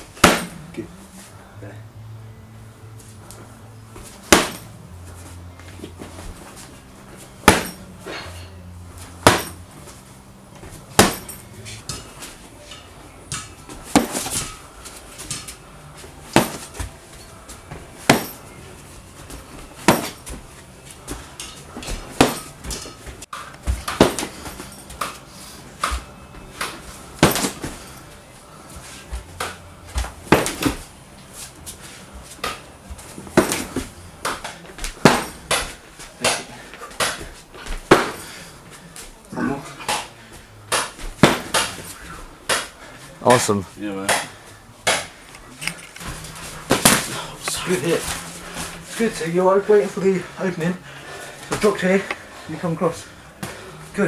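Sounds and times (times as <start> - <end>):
shin kicks smacking: 0.1 - 0.6, 4.2 - 4.8, 7.4 - 7.9, 9.2 - 9.7, 10.9 - 12.1, 13.3 - 14.6, 16.3 - 16.9, 18.0 - 18.4, 19.3 - 20.4, 21.9 - 25.2, 25.8 - 27.9, 29.1 - 30.9, 32.4 - 38.3, 40.7 - 42.8, 46.0 - 47.2.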